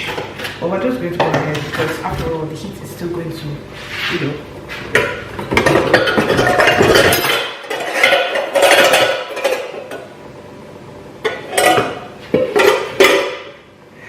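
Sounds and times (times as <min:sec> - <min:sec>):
pots and pans clattering: 0:04.8 - 0:10.1, 0:11.2 - 0:13.6.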